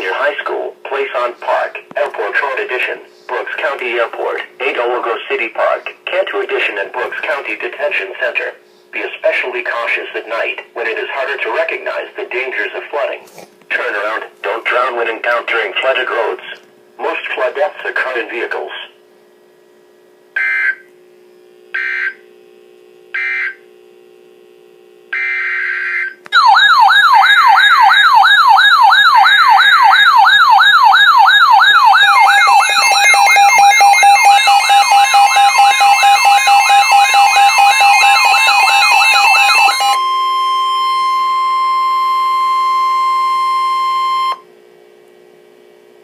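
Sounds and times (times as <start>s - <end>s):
warbling siren-like alert tone: 25.2s - 44.4s
steady alert tones: 27.7s - 44.4s
screechy digital data bursts: 31.7s - 40.0s.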